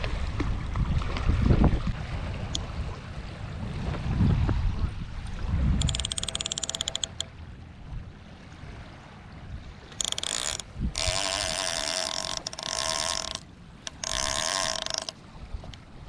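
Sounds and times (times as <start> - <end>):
fishing reel gears whirring: 5.8 - 7.3, 9.9 - 15.2.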